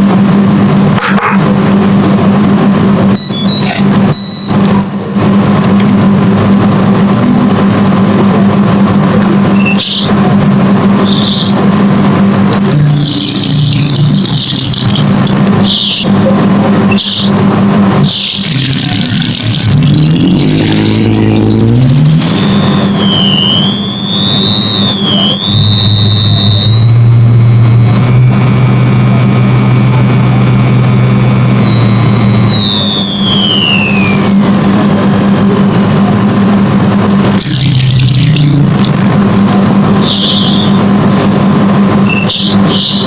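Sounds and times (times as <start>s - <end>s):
high motor whine: 0.0s - 43.0s
electronic tones stepping up: 2.2s - 6.4s, 9.4s - 43.0s.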